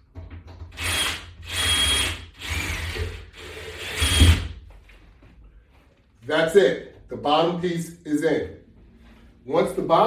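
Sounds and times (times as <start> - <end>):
cordless screw gun whining: 0.8 - 4.5.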